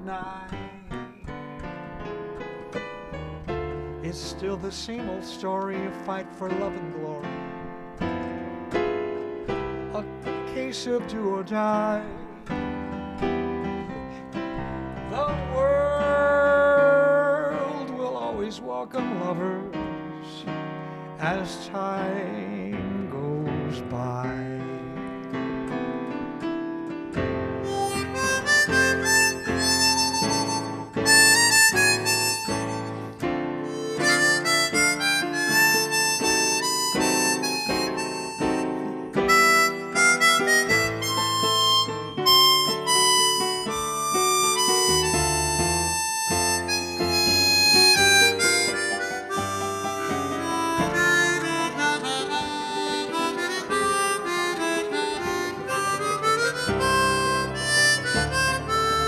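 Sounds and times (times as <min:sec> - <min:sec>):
harmonica melody: 0:00.0 - 0:59.0.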